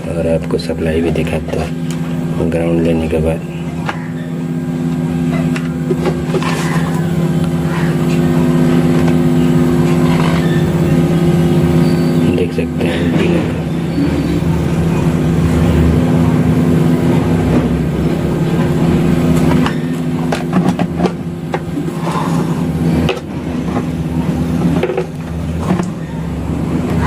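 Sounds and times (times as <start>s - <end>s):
low mechanical drone: 0.0s - 27.0s.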